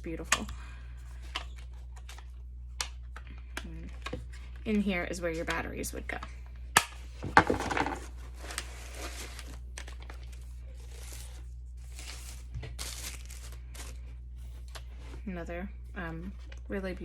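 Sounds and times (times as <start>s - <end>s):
plastic packaging crinkling: 7.4s - 15.0s.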